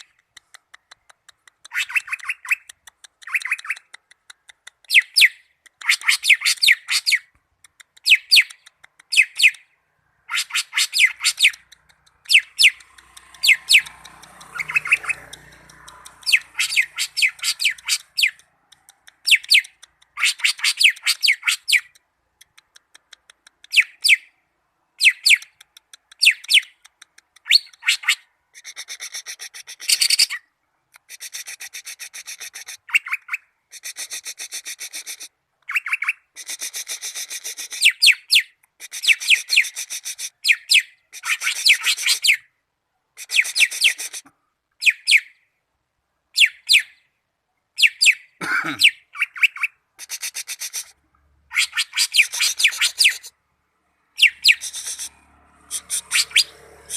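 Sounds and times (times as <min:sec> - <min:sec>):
buzzy rasping bird phrases: 0:00.0 - 0:24.2, 0:31.0 - 0:42.4, 0:48.5 - 0:56.9
bird singing trills: 0:08.0 - 0:22.0, 0:54.2 - 0:56.9.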